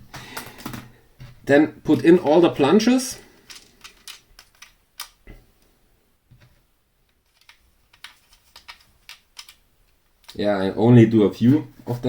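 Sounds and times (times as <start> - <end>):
plastic keyboard key clicks: 7.4 - 9.6.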